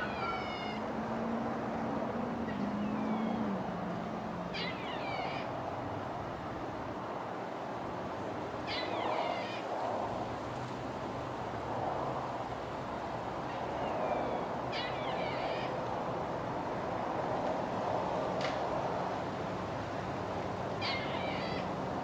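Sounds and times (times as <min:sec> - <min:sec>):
high falling animal calls: 0:00.0 - 0:00.9, 0:04.5 - 0:05.7, 0:08.6 - 0:09.7, 0:13.5 - 0:15.9, 0:20.8 - 0:21.8
steady background hiss: 0:00.0 - 0:22.0.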